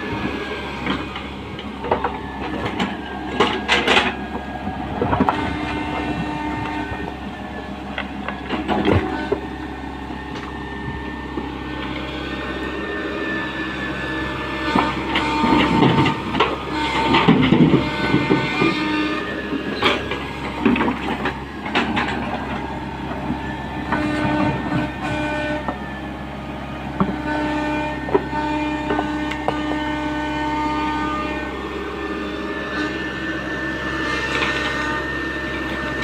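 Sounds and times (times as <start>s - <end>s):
excavator diesel engine running: 0.0s - 36.0s
steady whining tone: 0.0s - 36.0s
metal clanks and knocks: 0.8s - 6.8s, 14.8s - 18.9s.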